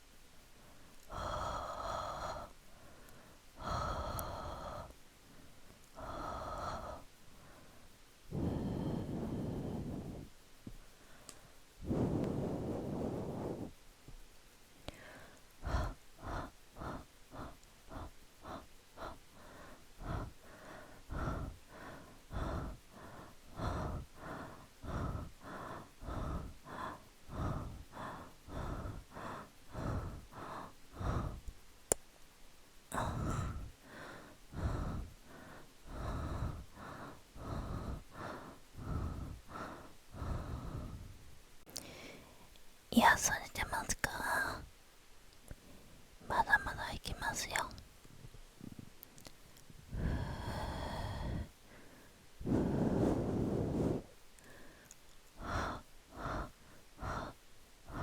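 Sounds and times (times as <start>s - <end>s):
person breathing out in puffs: 49.9s - 58.0s.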